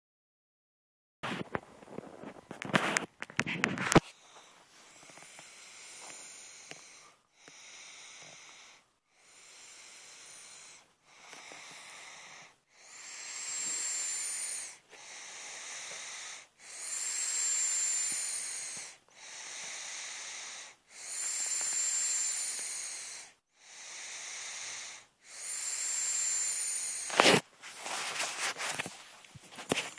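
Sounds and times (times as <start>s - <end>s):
snoring with whistle: 3.8s - 27.4s.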